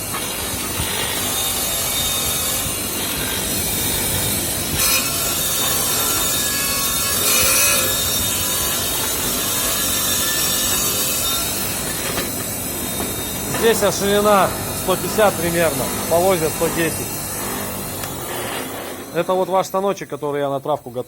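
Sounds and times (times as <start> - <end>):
tube cleaning machine rasping: 0.0 - 19.8.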